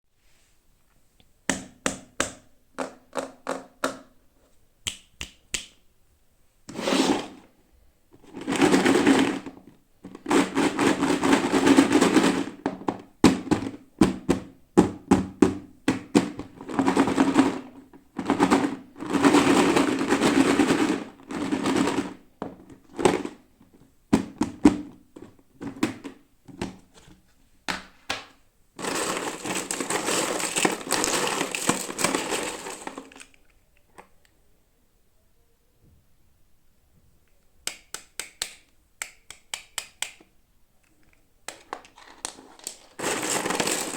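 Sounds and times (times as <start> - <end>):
plastic crinkling: 28.8 - 33.6, 41.5 - 43.9
packaging taps and clicks: 37.7 - 43.9.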